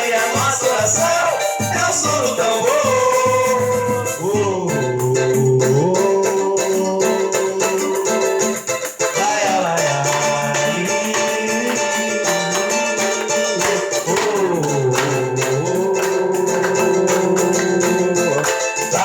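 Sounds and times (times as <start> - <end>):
shaken and struck percussion: 0.0 - 19.0
band playing live: 0.4 - 19.0.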